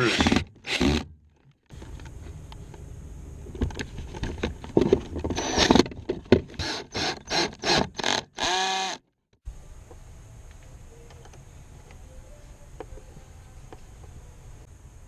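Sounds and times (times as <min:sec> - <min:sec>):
screws being driven: 0:00.0 - 0:01.1, 0:05.4 - 0:05.8, 0:06.5 - 0:09.0.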